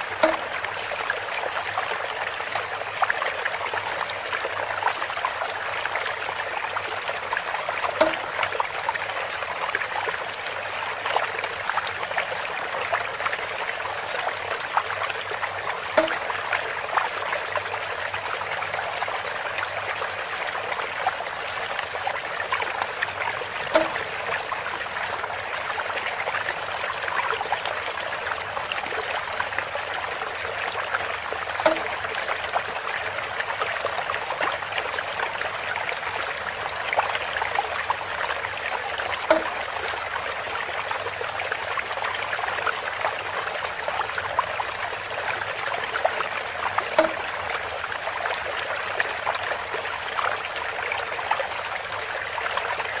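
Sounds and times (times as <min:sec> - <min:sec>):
water trickling from a spout: 0:00.0 - 0:53.0
bamboo knock: 0:00.2 - 0:00.6, 0:08.0 - 0:08.4, 0:16.0 - 0:16.3, 0:23.6 - 0:24.3, 0:31.6 - 0:32.0, 0:39.3 - 0:39.6, 0:47.0 - 0:47.3.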